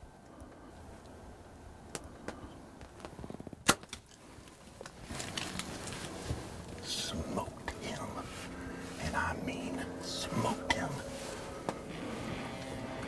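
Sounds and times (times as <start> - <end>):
rustling: 2.8 - 7.1, 11.1 - 13.0.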